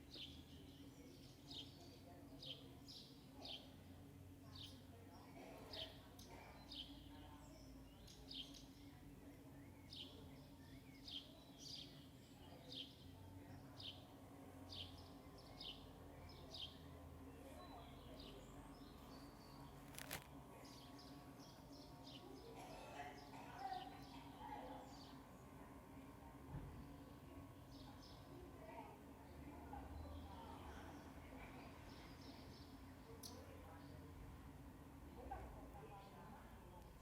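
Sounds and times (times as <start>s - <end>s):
small bird chirping: 17.5s - 21.1s.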